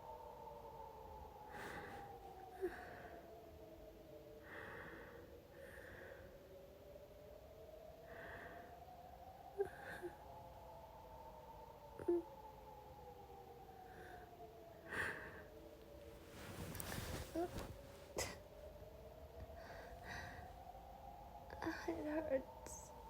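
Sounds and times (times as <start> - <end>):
blizzard wind howling: 0.0 - 23.0
woman breathing heavily: 1.4 - 3.6, 4.4 - 6.5, 8.0 - 8.9, 9.6 - 10.4, 13.8 - 18.4, 19.4 - 20.7.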